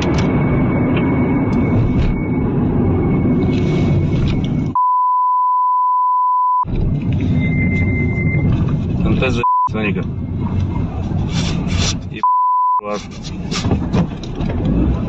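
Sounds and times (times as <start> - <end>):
loud dense rumble: 0.0 - 4.8
censor bleep: 4.7 - 6.7, 9.4 - 9.7, 12.2 - 12.8.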